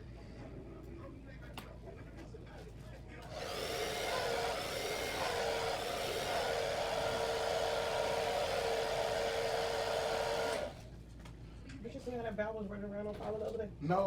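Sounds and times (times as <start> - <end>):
small electric motor whining: 3.3 - 10.8.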